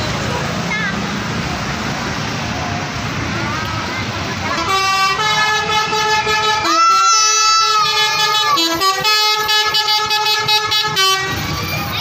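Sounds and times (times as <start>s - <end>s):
bus horn playing a tune: 4.5s - 11.6s.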